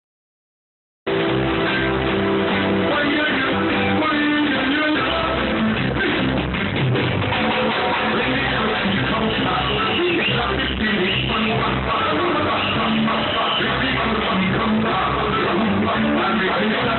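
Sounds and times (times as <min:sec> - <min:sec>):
live reggae band playing: 0:01.1 - 0:16.9.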